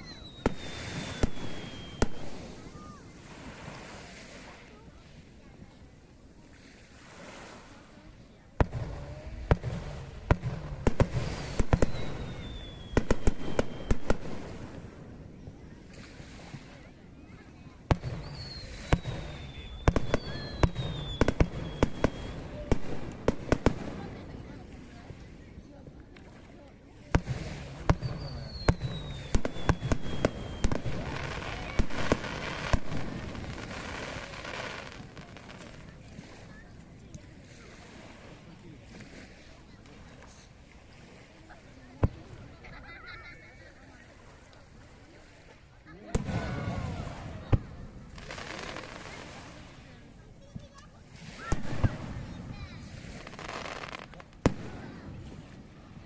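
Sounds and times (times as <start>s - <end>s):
fireworks bangs: 0.0s - 3.9s, 8.6s - 15.6s, 17.8s - 24.8s, 27.1s - 36.0s, 46.1s - 55.7s
fireworks crackle: 0.0s - 3.9s, 8.6s - 15.1s, 17.9s - 24.4s, 27.2s - 36.0s, 46.2s - 55.7s.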